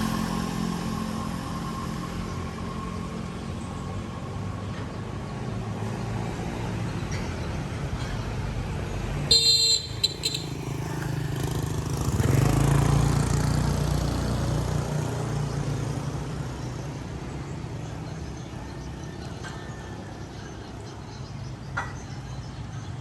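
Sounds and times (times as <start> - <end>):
vehicle horn honking: 9.3 - 11.0.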